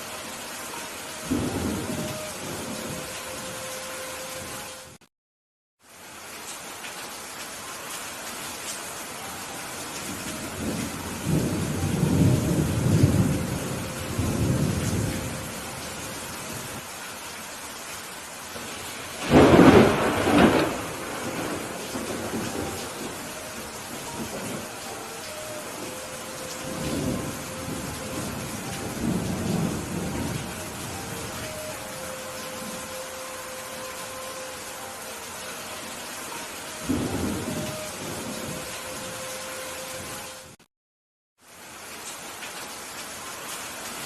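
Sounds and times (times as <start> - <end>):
rain hiss: 0.0 - 5.0, 5.8 - 40.6, 41.4 - 44.0
thunder rumbling: 1.3 - 3.5, 10.2 - 16.8, 18.6 - 33.0, 36.8 - 39.2
sharp thunderclap: 19.2 - 22.6.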